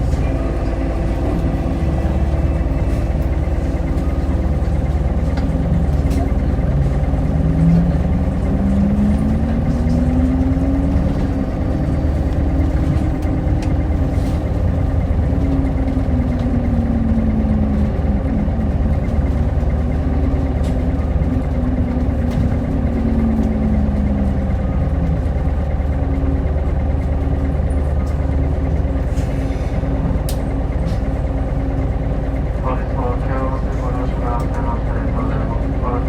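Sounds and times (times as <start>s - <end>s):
bus engine running: 0.0s - 36.0s
steady low hum: 0.0s - 36.0s.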